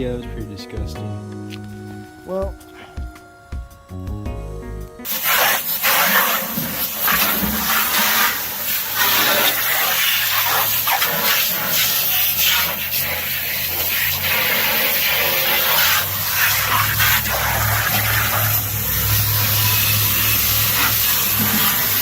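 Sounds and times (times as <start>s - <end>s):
water running and splashing: 5.1s - 22.0s.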